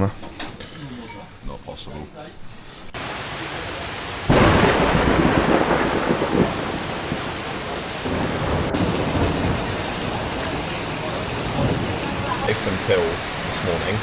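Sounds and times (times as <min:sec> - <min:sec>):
thunder rolling: 0:03.0 - 0:12.5
heavy rain pouring: 0:03.0 - 0:14.0.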